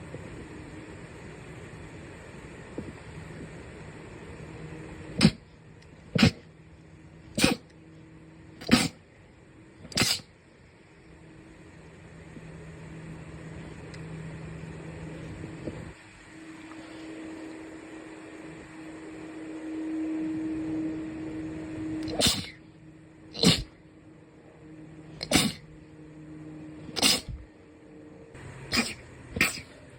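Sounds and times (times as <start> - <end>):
steady low hum: 0.0 - 29.9
person sneezing: 5.2 - 5.4, 6.1 - 6.5, 7.4 - 7.6, 8.6 - 9.0, 9.9 - 10.3, 22.0 - 22.6, 23.4 - 23.8, 25.2 - 25.7, 26.9 - 27.4, 28.7 - 29.8.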